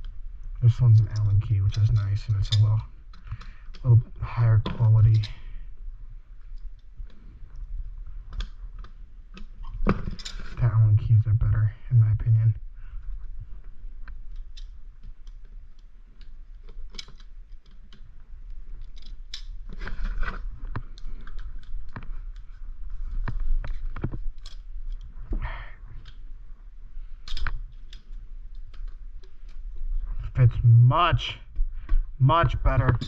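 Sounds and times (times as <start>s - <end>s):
metallic clicks and taps: 27.2s - 29.6s.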